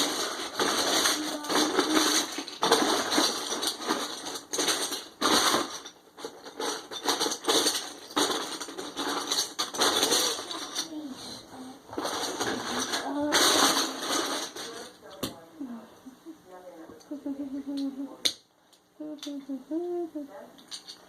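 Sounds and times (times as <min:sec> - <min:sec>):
plastic bricks clattering: 0:00.0 - 0:11.0, 0:11.9 - 0:15.3.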